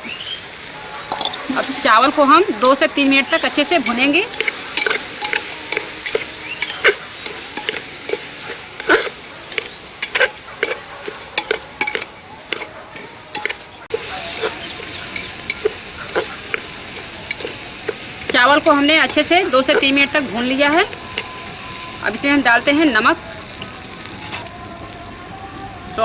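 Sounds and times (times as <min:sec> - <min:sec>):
rice sizzling in a pot: 0:00.0 - 0:26.0
spoon scraping and tapping pot: 0:00.6 - 0:21.4.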